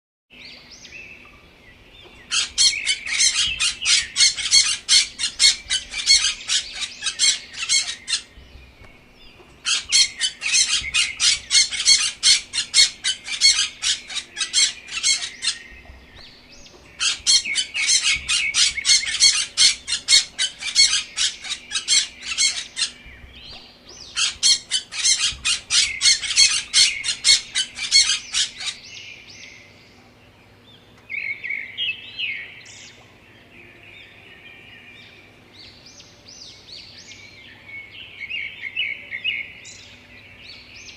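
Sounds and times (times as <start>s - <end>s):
faint high bird calls: 1.1s - 30.2s
bird chattering call: 2.3s - 28.8s.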